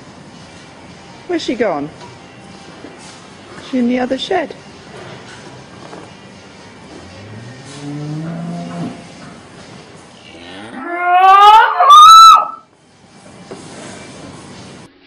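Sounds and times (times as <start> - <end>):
cow mooing: 7.1 - 9.2, 10.2 - 12.6.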